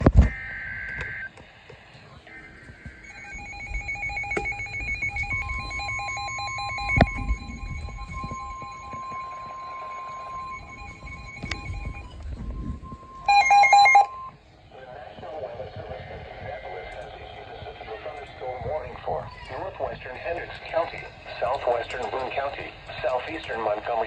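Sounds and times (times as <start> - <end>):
steady warning tone: 0.3 - 24.0
pulsing alarm beeps: 2.3 - 14.4
screechy digital data bursts: 3.0 - 13.8.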